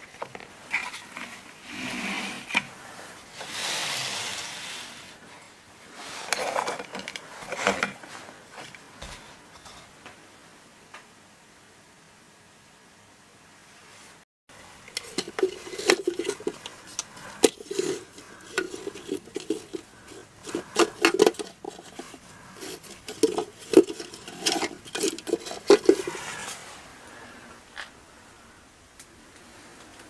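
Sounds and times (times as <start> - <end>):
small hard objects clinking: 14.8 - 26.5.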